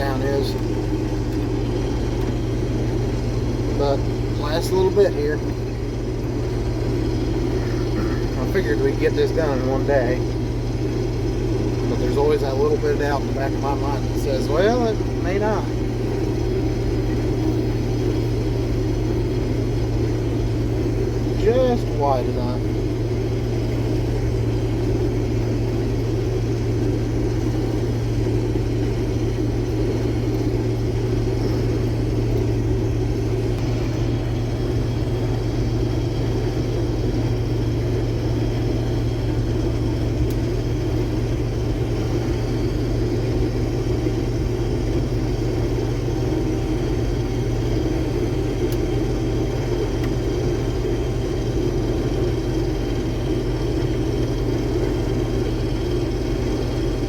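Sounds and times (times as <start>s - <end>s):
combine harvester drone: 0.0s - 57.0s.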